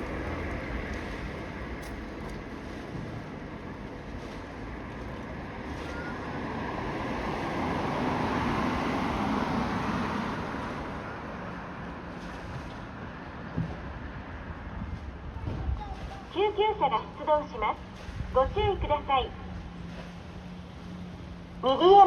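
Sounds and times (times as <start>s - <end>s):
vehicle passing: 0.0s - 14.8s.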